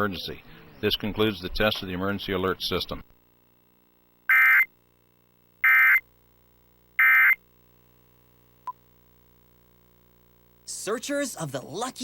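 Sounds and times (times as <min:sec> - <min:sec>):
digital data tone bursts: 0:04.3 - 0:04.7, 0:05.6 - 0:06.0, 0:07.0 - 0:07.4.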